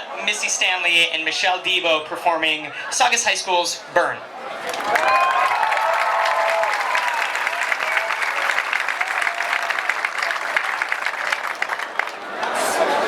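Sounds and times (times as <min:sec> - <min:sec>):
audience cheering: 0:04.4 - 0:13.0
audience applauding: 0:04.5 - 0:13.0.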